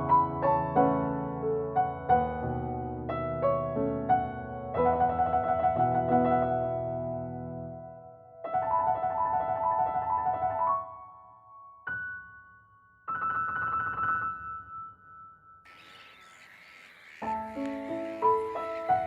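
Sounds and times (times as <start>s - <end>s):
faint hiss: 15.7s - 19.0s.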